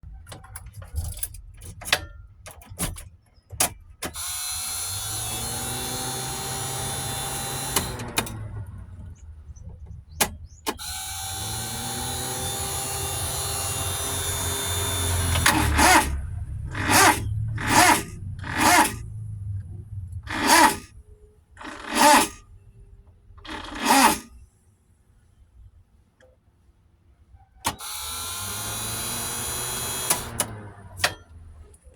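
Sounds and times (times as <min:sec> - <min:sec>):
starter clicks: 0:03.6 - 0:08.6, 0:10.1 - 0:19.1, 0:27.6 - 0:31.4
starter motor cranking: 0:04.1 - 0:09.5, 0:10.1 - 0:20.9, 0:21.6 - 0:22.5, 0:23.4 - 0:24.4, 0:27.7 - 0:31.8
short loud engine bursts: 0:14.3 - 0:21.0, 0:21.6 - 0:22.6.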